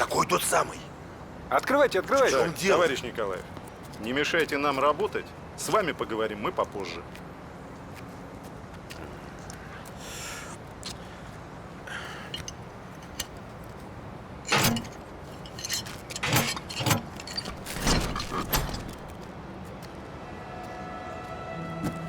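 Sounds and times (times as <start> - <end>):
metal clanks and rattles: 12.3 - 13.8, 14.4 - 19.3.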